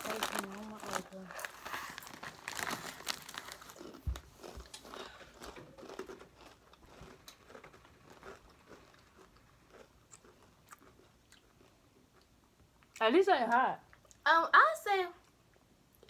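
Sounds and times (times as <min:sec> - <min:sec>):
chips crunching while chewed: 0:00.0 - 0:12.3.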